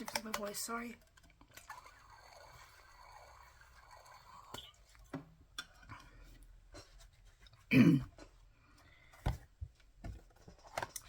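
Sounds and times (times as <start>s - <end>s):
woman clearing her throat: 7.7s - 8.2s.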